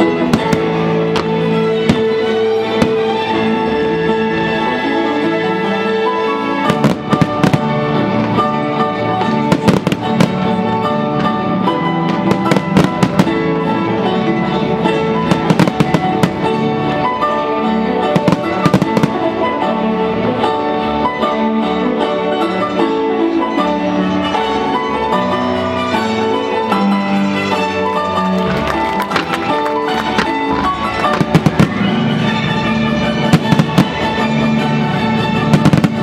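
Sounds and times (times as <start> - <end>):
fireworks bursting: 0.0 - 3.8, 6.6 - 17.4, 18.0 - 19.5, 27.6 - 34.8, 35.4 - 36.0
loud music: 0.0 - 36.0.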